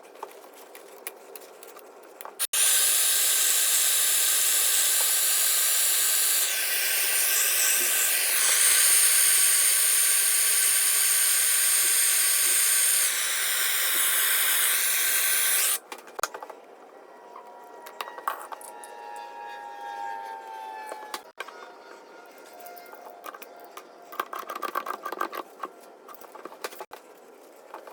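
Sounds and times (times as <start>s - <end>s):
gas torch hissing: 2.4s - 15.8s.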